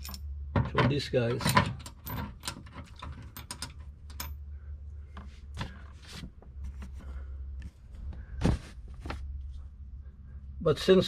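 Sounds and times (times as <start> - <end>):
small metal parts clicking: 0.0 - 0.3, 1.4 - 4.4
steady low hum: 0.0 - 11.0.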